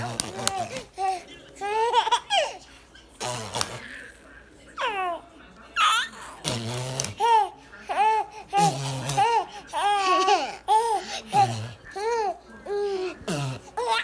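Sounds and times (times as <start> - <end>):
baby belly laughing: 0.0 - 2.6, 5.8 - 14.0.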